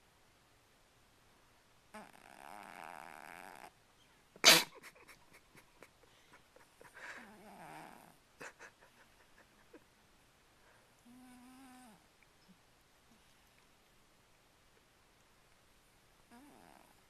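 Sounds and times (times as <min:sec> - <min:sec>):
cat snoring: 0:01.9 - 0:03.7, 0:07.2 - 0:08.2, 0:11.0 - 0:12.0, 0:16.3 - 0:17.0.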